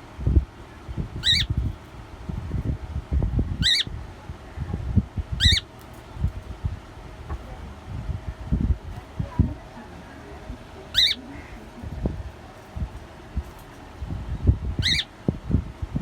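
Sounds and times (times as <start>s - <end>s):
cockatiel chirping: 1.2s - 1.5s, 3.6s - 3.9s, 5.4s - 5.6s, 14.8s - 15.1s.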